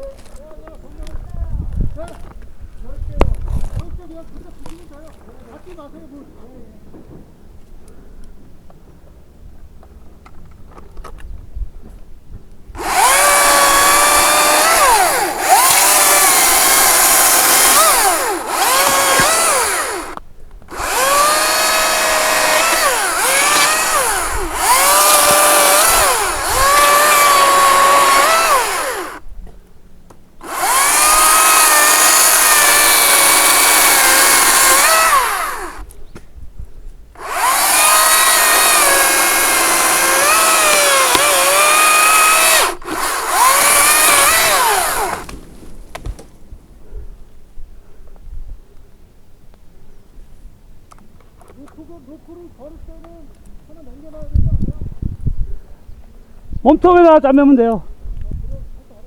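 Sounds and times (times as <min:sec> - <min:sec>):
chainsaw cutting branches: 0:12.8 - 0:29.2, 0:30.4 - 0:35.9, 0:37.2 - 0:46.4.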